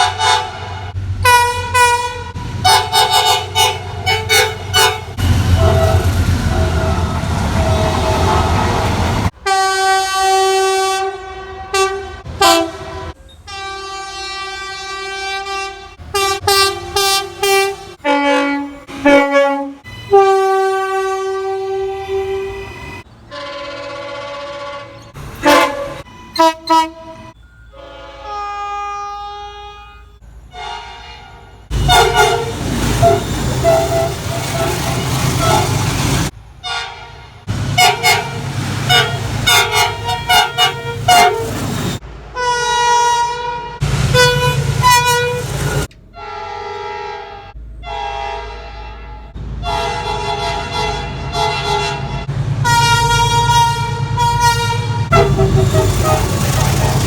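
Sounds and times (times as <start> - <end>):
train running rumble: 0.0 - 9.5, 31.3 - 42.5, 43.5 - 46.5, 47.4 - 57.0
locomotive air horn blasts: 0.0 - 57.0.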